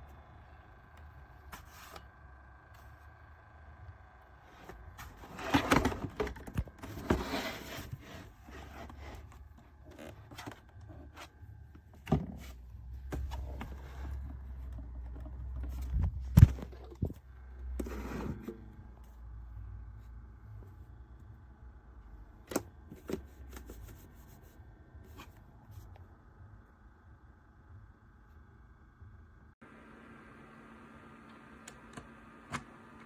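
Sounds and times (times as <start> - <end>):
objects knocking and scraping: 4.6 - 9.4.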